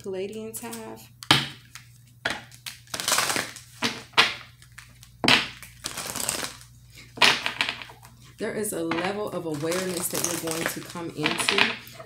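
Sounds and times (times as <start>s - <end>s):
cards being shuffled: 1.6s - 6.7s, 9.4s - 12.0s.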